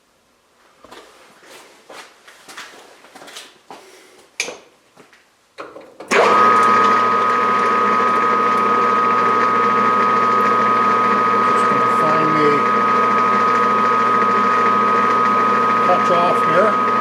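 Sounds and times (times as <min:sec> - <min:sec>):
metal lathe motor whining: 0:06.1 - 0:17.0.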